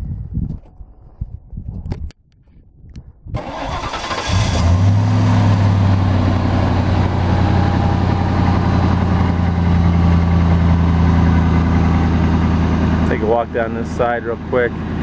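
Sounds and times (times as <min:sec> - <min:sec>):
starter cranking: 0:03.4 - 0:04.8
engine idling: 0:03.4 - 0:15.0.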